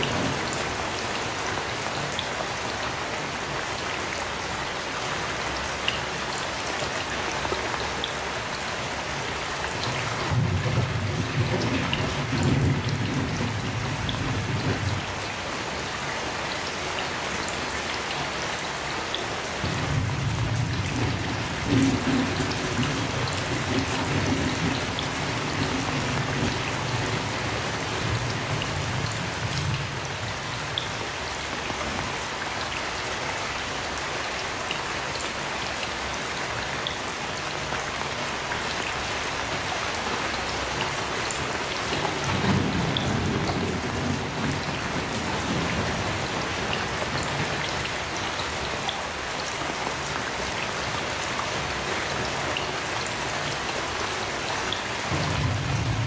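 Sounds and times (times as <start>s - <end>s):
heavy rain: 0.0s - 56.0s
distant thunder rumble: 10.2s - 15.4s, 19.6s - 32.2s, 41.9s - 47.7s, 55.0s - 56.0s.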